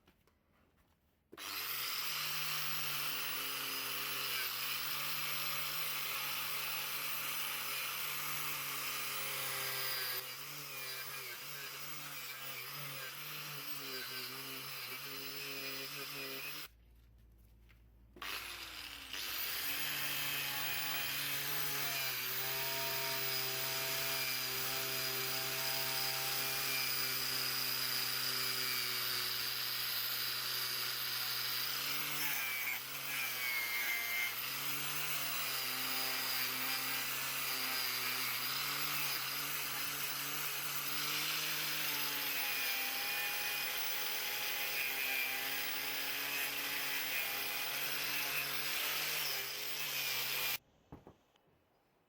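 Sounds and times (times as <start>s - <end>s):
electric power tool running: 1.4s - 6.9s, 18.2s - 32.6s.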